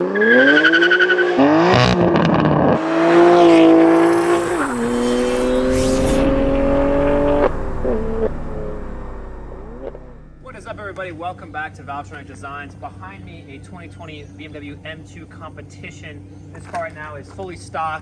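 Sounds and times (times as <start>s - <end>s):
car engine accelerating hard: 0.0s - 10.8s.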